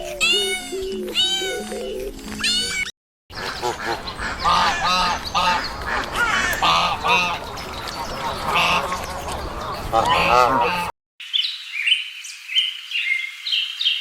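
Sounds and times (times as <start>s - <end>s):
simple background melody: 0.0s - 2.7s
cat meowing: 0.3s - 1.7s
ducks quacking: 3.3s - 10.9s.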